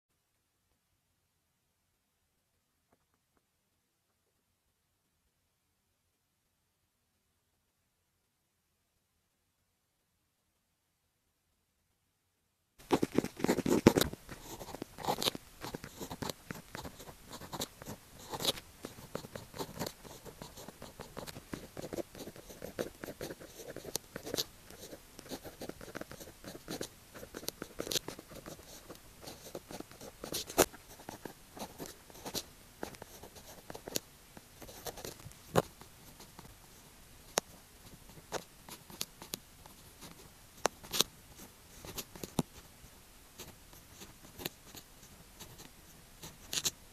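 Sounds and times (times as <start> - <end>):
pen writing on paper: 12.8 - 34.0, 34.6 - 36.2.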